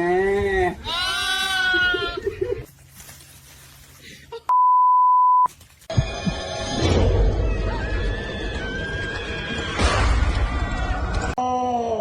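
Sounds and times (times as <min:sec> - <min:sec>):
loud single-tone beep: 0:04.5 - 0:05.5.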